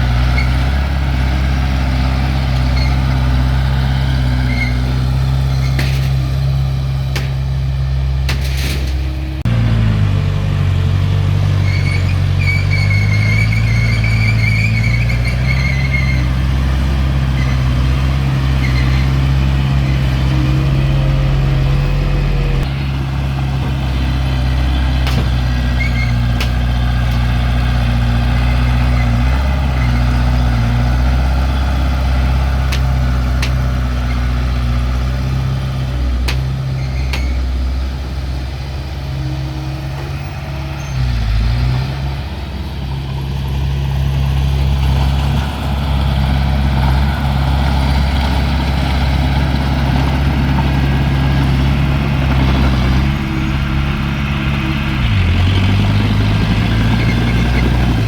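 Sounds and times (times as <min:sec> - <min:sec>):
diesel engine running: 0:00.0 - 0:58.0
metallic clanks: 0:05.5 - 0:07.6, 0:08.2 - 0:09.4.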